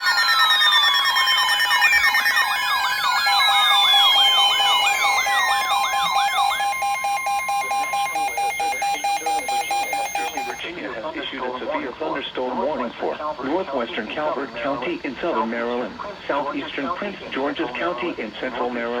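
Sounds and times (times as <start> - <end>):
rapid pulsed beeping: 0.0 - 10.6
wailing electronic siren: 0.0 - 10.6
long falling tones: 0.4 - 10.6
steady alert tone: 2.1 - 10.6.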